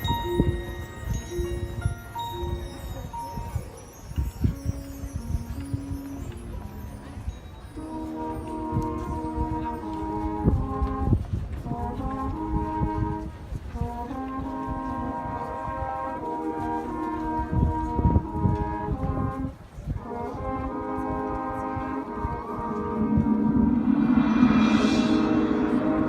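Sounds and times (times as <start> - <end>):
brass section playing chords: 20.0 - 26.0
low drum thumps: 22.4 - 26.0.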